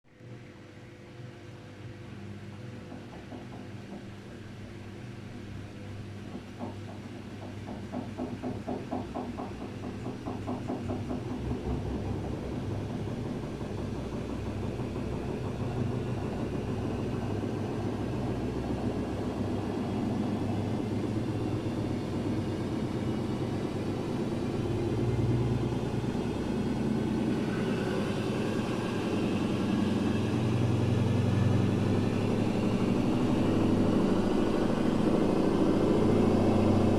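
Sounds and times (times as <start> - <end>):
washing machine drum thumping: 6.2 - 36.9
motor whine: 11.6 - 36.9.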